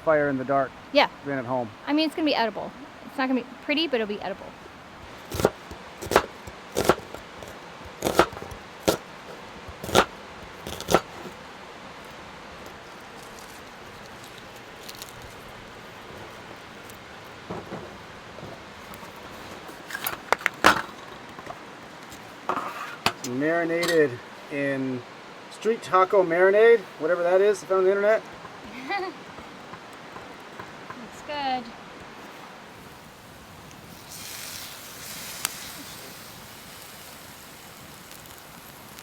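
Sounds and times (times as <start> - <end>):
steady background hiss: 0.0 - 39.0
camp cookware clinking: 5.0 - 11.4, 15.9 - 24.2, 27.5 - 38.6.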